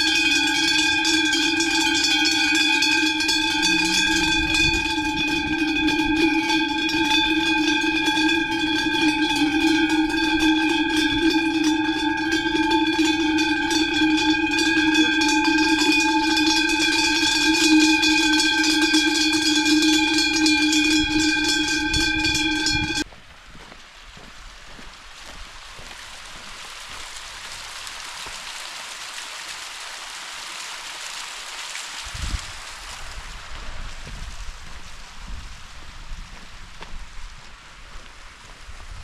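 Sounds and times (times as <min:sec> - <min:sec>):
cowbells clanking: 0:00.0 - 0:23.1.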